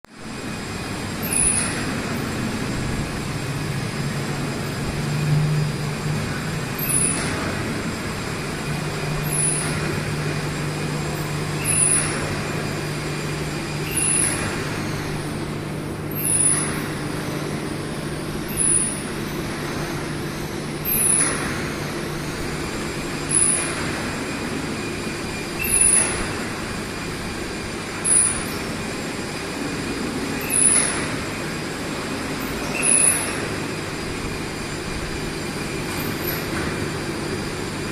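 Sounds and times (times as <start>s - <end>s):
machine humming: 0.1s - 37.9s
machine hiss and knock: 6.0s - 17.5s, 20.8s - 28.8s, 35.6s - 37.8s.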